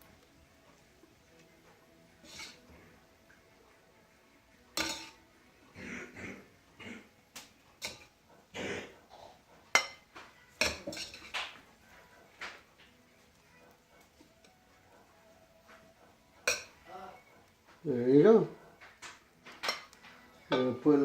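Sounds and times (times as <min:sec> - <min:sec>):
utensil scraping pan and plate: 0:02.2 - 0:02.8, 0:04.8 - 0:05.2, 0:10.6 - 0:11.6.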